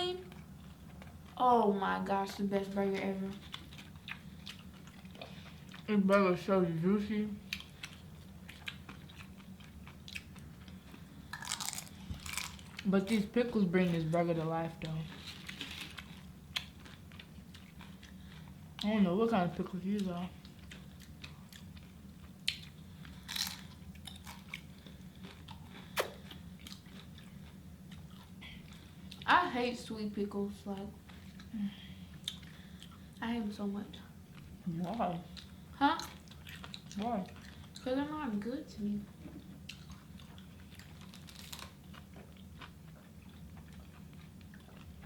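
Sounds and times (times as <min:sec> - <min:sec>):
steady low hum: 0:00.0 - 0:45.0
close chewing with crunches: 0:02.8 - 0:06.2, 0:07.4 - 0:13.2, 0:14.8 - 0:19.0, 0:19.6 - 0:29.4, 0:30.7 - 0:33.3, 0:34.3 - 0:38.1, 0:39.4 - 0:45.0
wet mouth clicks: 0:26.0 - 0:26.2.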